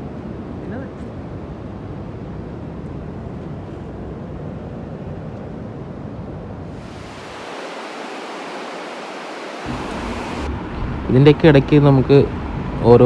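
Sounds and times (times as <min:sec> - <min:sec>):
steady low rumbling noise: 0:06.6 - 0:13.0
bright even hiss: 0:06.7 - 0:10.6.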